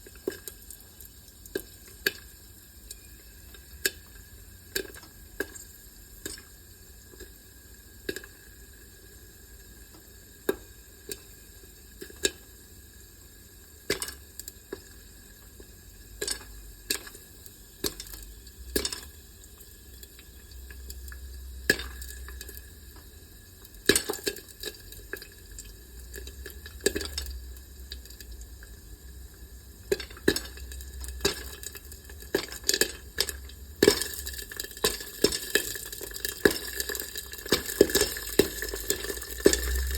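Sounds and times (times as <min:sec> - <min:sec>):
popcorn popping: 0:00.0 - 0:07.4, 0:08.0 - 0:12.6, 0:13.7 - 0:39.9
faint sizzle: 0:00.0 - 0:39.9
low hum: 0:39.5 - 0:39.9.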